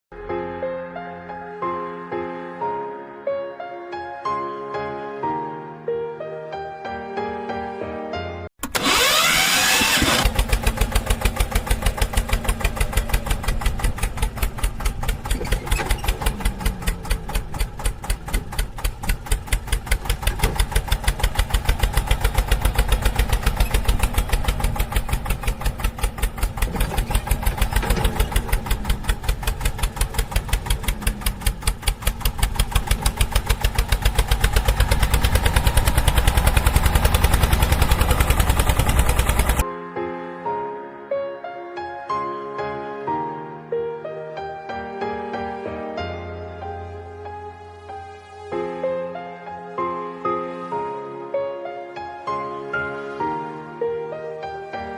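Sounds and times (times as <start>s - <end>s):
vehicle engine starting and chugging: 8.6s - 39.6s.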